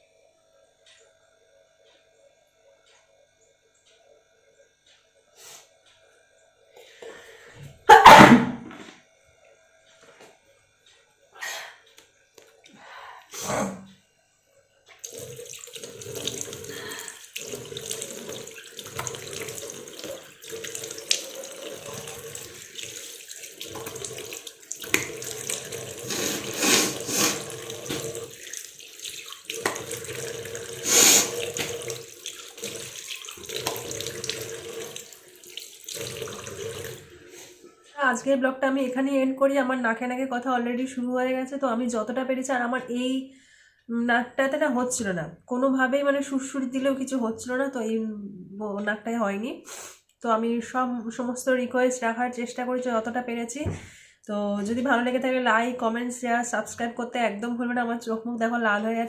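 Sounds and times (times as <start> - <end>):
tap running into basin: 14.9 - 37.1
water splashing on face: 15.0 - 37.1.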